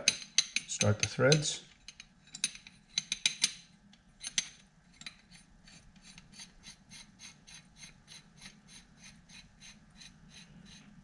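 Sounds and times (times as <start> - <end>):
metal threads scraping: 4.2 - 11.0.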